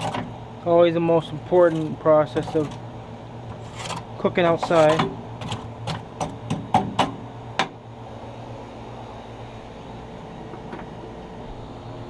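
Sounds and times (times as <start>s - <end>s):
steady low hum: 0.0s - 12.0s
grill brush scraping grates: 1.1s - 6.0s.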